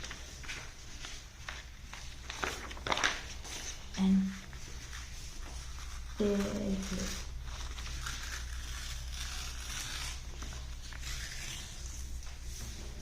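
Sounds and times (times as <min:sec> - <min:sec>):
paper tearing: 0:04.8 - 0:12.7.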